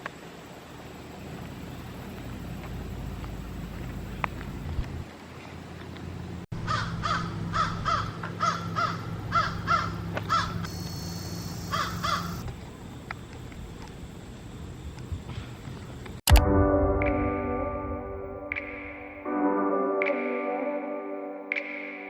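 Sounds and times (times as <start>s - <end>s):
bird calling: 6.6s - 12.4s.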